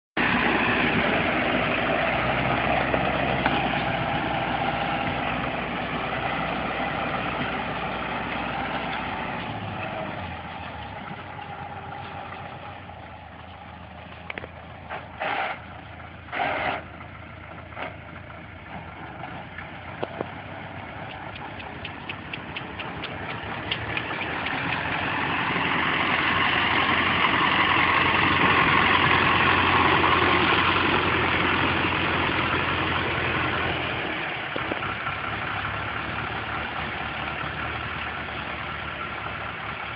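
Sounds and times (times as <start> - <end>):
engine running: 0.2 - 39.9.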